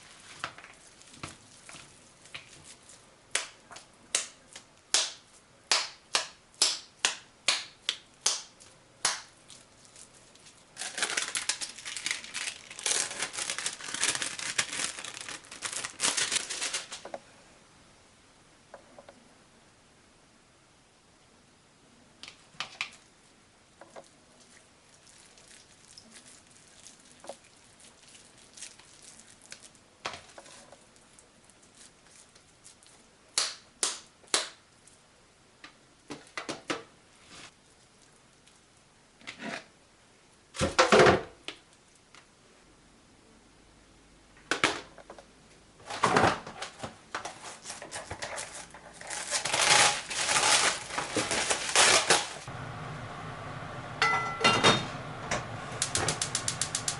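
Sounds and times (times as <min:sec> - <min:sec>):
kitchen utensils and dishes clattering: 0:54.0 - 0:54.9.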